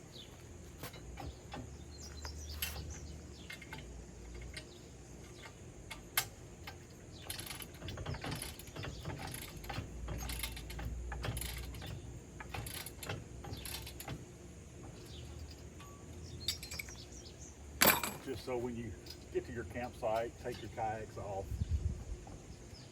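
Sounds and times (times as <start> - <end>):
wrench clicking and rattling: 2.6 - 14.3.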